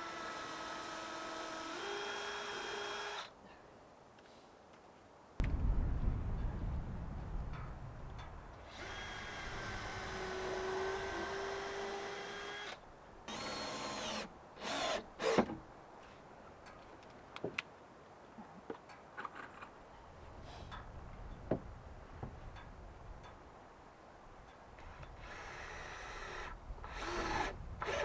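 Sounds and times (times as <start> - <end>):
power drill driving screws: 0.0 - 3.3, 8.7 - 15.5, 25.2 - 28.0.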